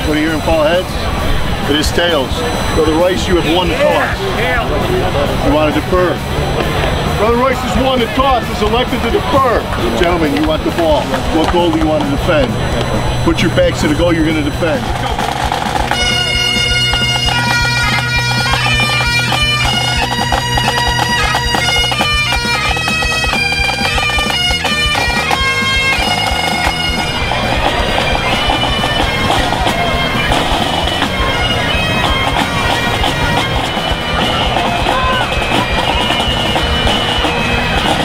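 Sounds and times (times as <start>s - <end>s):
bagpipes playing a tune: 0.0s - 38.0s.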